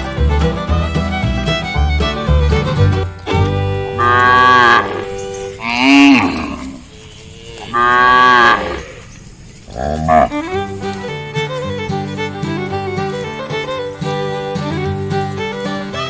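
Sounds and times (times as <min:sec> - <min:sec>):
background music: 0:00.0 - 0:06.8
cow mooing: 0:03.8 - 0:11.1.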